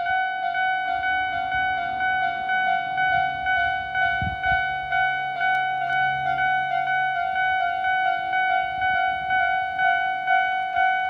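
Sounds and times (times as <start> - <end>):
level crossing warning bells: 0.0 - 11.0.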